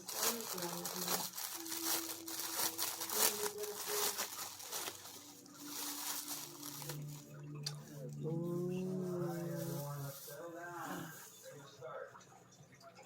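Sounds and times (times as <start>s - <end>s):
plastic packaging crinkling: 0.0s - 8.2s, 8.8s - 11.1s.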